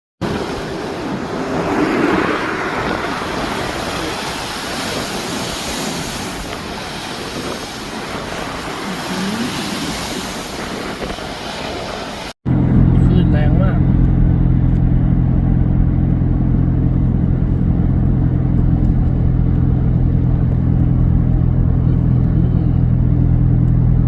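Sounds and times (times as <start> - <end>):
rough sea surf: 0.2 - 12.4
strong wind: 0.2 - 24.0.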